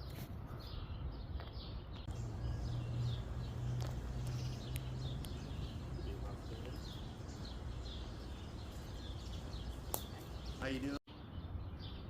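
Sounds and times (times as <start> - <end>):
small birds chirping: 0.0 - 12.0
low background rumble: 2.1 - 10.6
low steady hum: 2.1 - 10.8.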